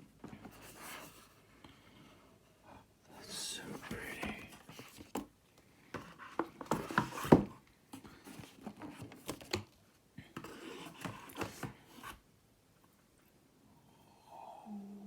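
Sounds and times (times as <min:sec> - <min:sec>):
cardboard and plastic rustling: 0:03.6 - 0:12.2.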